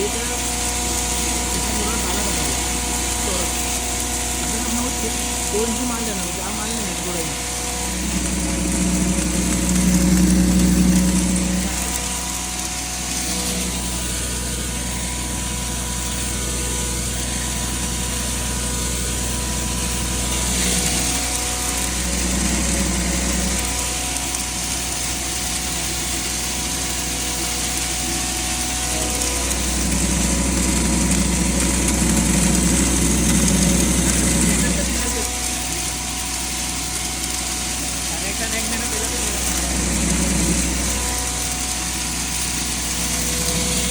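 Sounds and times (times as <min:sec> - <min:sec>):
grain grinder humming and whining: 0:00.0 - 0:43.9.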